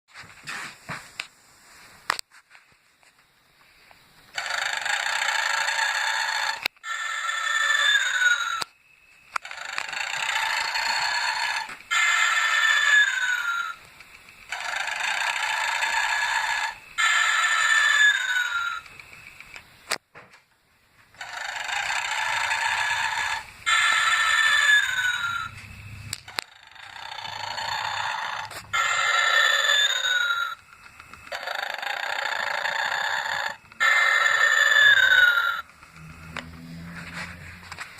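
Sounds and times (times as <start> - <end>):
toy recorded snoring: 4.4 - 8.7, 9.4 - 13.8, 14.5 - 18.9, 21.2 - 25.6, 26.2 - 30.6, 31.2 - 37.7
sharp clicks: 18.0 - 20.0.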